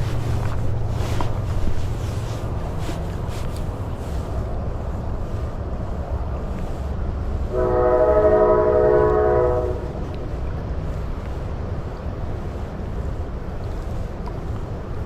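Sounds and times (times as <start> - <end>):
train horn chord: 7.5 - 10.3.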